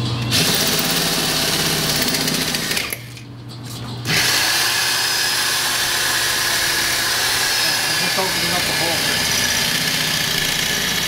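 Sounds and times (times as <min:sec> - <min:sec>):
power saw cutting steel: 0:04.1 - 0:11.0.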